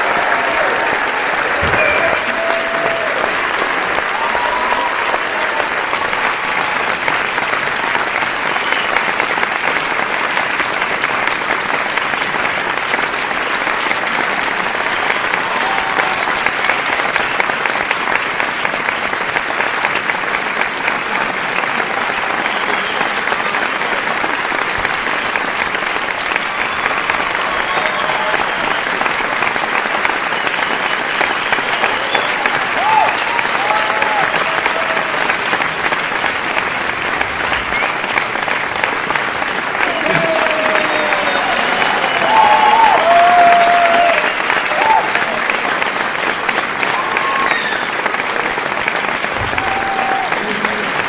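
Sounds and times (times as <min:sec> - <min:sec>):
crowd applauding: 0:00.0 - 0:51.0
faint voices: 0:49.3 - 0:51.0.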